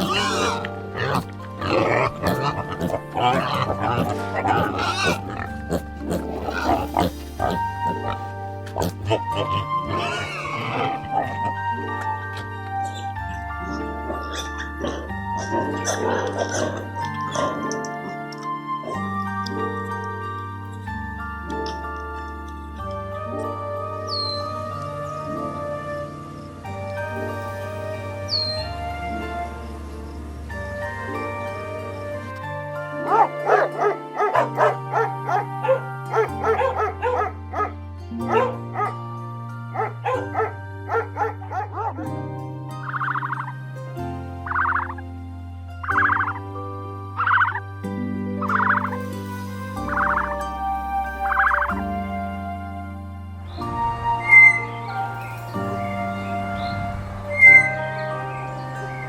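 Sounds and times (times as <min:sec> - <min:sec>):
music with sustained chords: 0:00.0 - 0:59.0
dog barking high-pitched: 0:33.0 - 0:37.7, 0:38.3 - 0:39.0, 0:39.8 - 0:42.1.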